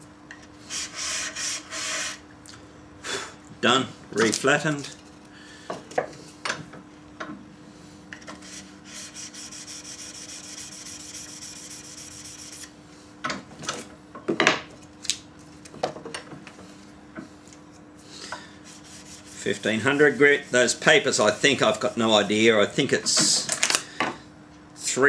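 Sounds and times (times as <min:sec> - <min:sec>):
chisel scraping on abrasive paper: 0:08.5 - 0:12.7.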